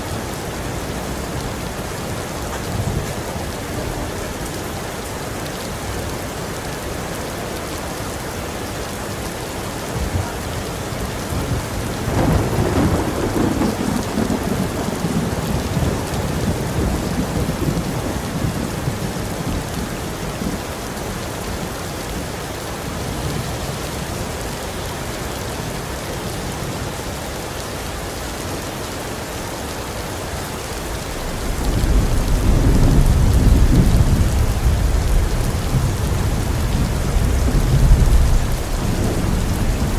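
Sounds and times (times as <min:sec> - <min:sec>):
heavy rain falling: 0:00.0 - 0:39.9
thunder rolling: 0:11.3 - 0:19.3, 0:30.7 - 0:39.9.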